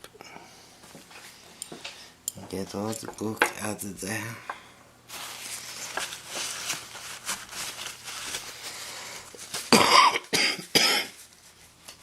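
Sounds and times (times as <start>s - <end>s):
man coughing: 9.7s - 11.1s.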